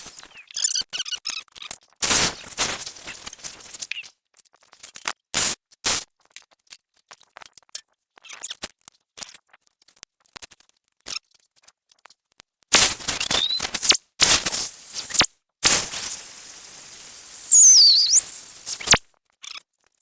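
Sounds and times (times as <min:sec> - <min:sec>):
harsh noise burst: 0:12.8 - 0:19.0.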